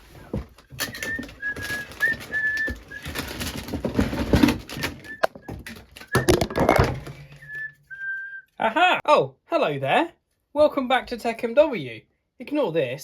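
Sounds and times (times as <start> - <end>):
rustling and clattering objects: 0.0 - 8.0
person whistling a tune: 0.8 - 3.3, 4.8 - 8.6.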